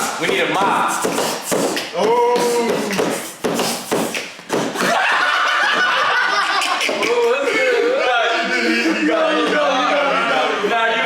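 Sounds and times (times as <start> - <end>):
man vocalising: 1.9 - 3.0, 6.6 - 10.6.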